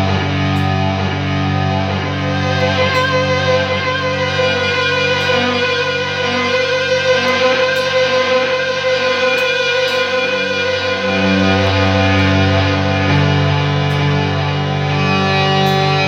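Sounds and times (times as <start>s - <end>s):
electric guitar volume swells: 0.0s - 16.0s.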